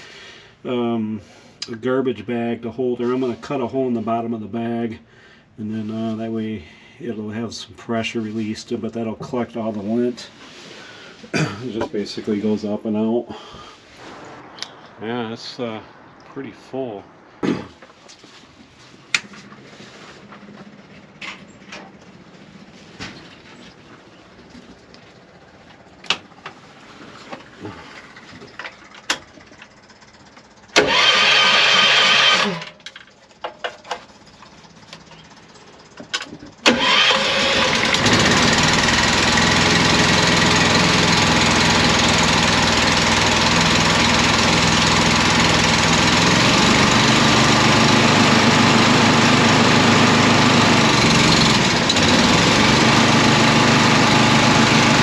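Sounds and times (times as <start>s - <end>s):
air compressor running: 29.2s - 32.8s, 33.4s - 55.0s.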